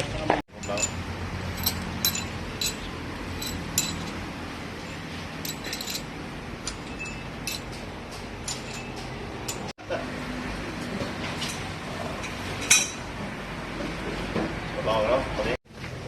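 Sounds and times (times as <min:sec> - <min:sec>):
metallic tool clinks and taps: 0:00.6 - 0:04.2, 0:04.8 - 0:09.7
low background hum: 0:00.6 - 0:15.6.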